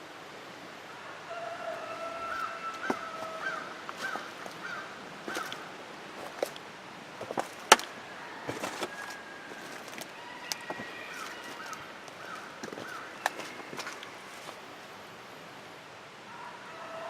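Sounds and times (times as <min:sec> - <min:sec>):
bird falling calls: 0:01.3 - 0:06.6, 0:07.2 - 0:14.6.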